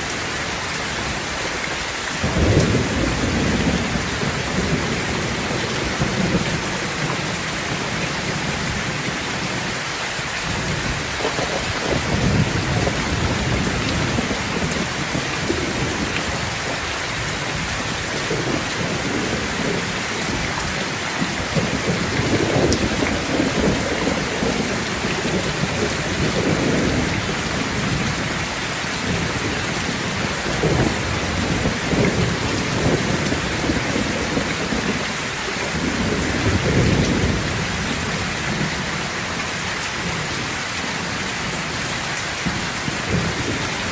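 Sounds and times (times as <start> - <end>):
heavy rain: 0.0 - 43.9
thunder rumbling: 2.2 - 43.9.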